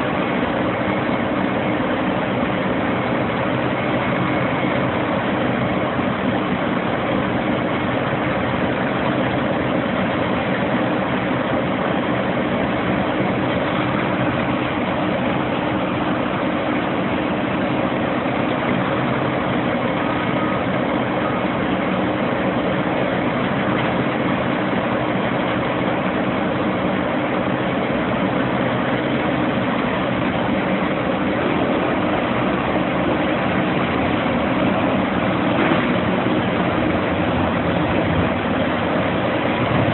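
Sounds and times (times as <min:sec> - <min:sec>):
large diesel engine running: 0:00.0 - 0:39.9.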